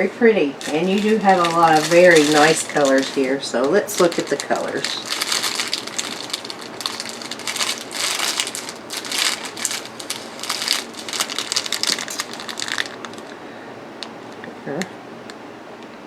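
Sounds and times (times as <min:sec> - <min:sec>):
plastic bags rustling: 0:00.4 - 0:14.5
small resin beads clicking: 0:00.6 - 0:13.4.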